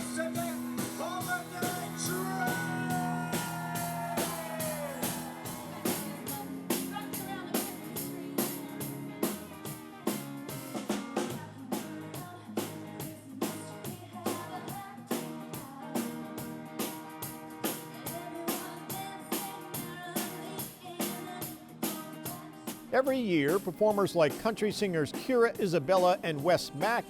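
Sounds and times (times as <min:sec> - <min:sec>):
person singing: 0:00.0 - 0:10.2, 0:18.0 - 0:27.0
upbeat band music: 0:00.0 - 0:12.0, 0:16.0 - 0:18.7, 0:22.7 - 0:27.0
guitar: 0:00.0 - 0:27.0
steady drum beat: 0:00.0 - 0:27.0.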